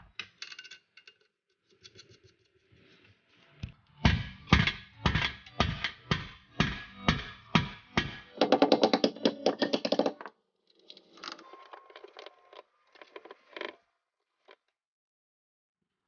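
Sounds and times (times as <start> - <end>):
background music with drum fill: 4.0 - 10.0.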